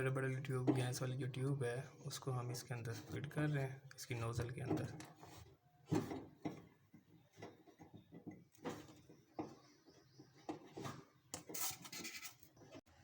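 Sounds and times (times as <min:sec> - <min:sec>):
rubber hose knocking and rubbing: 0:04.2 - 0:12.8.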